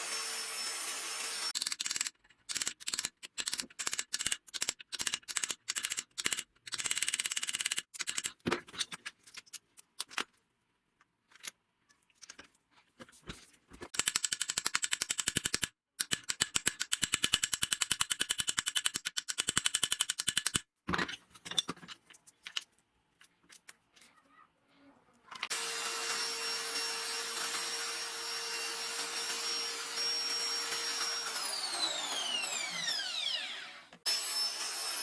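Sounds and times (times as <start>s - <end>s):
rapid mechanical clicking: 1.5s - 8.4s, 14.0s - 20.7s.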